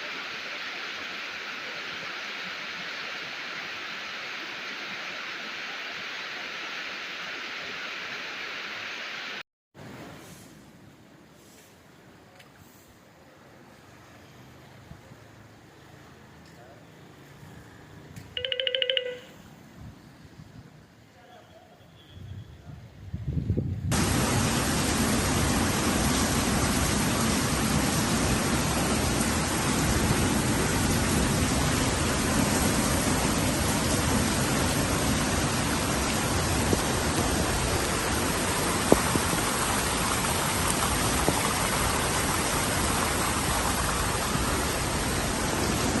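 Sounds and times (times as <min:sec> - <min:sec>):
heavy rain pouring: 0:00.0 - 0:09.4, 0:23.9 - 0:46.0.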